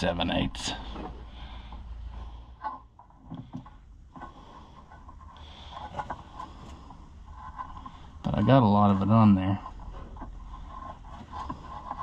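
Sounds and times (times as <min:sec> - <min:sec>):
low steady hum: 0:00.0 - 0:12.0
faint clicks rubs and knocks: 0:00.8 - 0:12.0.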